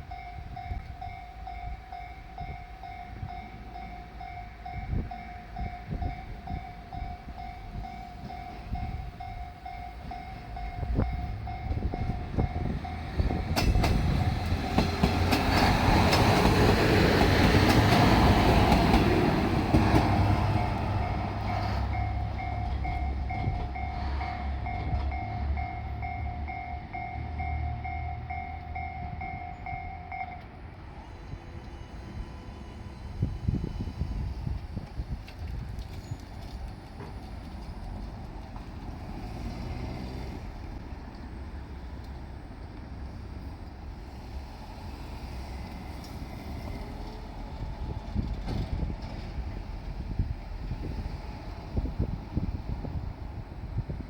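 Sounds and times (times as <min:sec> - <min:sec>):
level crossing alarm chiming: 0:00.0 - 0:13.4, 0:20.2 - 0:30.5
diesel railcar engine and wheels rumbling: 0:00.0 - 0:54.0.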